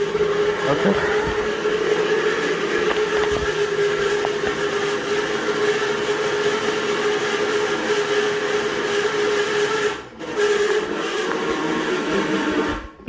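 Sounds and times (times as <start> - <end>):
electric fan whining hum: 0.0 - 13.0.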